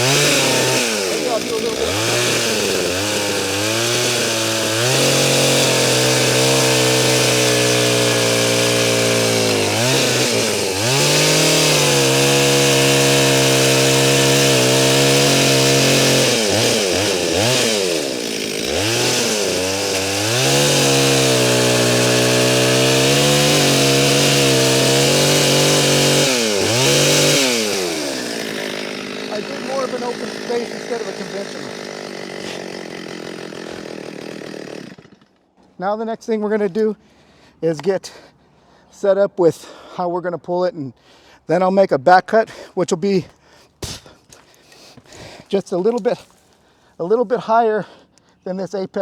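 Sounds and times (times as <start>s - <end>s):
chainsaw cutting tree trunk: 0.0s - 35.7s, 43.2s - 47.0s.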